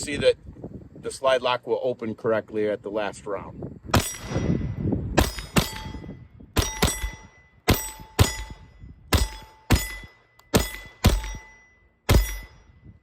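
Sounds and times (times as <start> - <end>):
pistol shots: 3.9 - 4.6, 5.2 - 12.7
steel plate clanging and ringing: 4.0 - 12.9.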